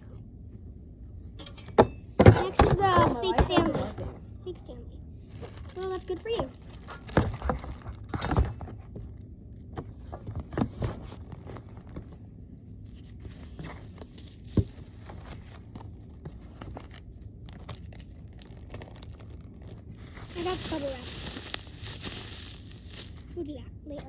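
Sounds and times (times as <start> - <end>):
packaging crinkling and rustling: 5.3 - 9.2, 10.1 - 23.4.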